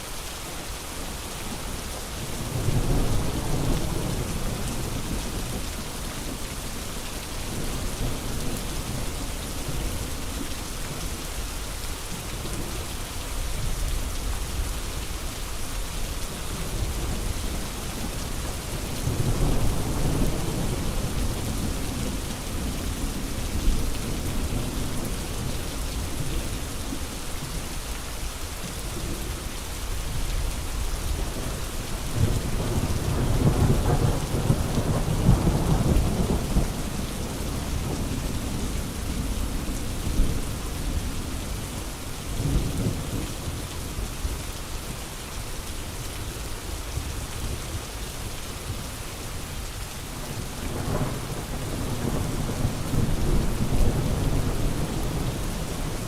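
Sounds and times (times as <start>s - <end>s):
steady rain falling: 0.0s - 56.0s
low rolling thunder: 16.6s - 25.2s, 32.1s - 43.3s, 50.4s - 56.0s.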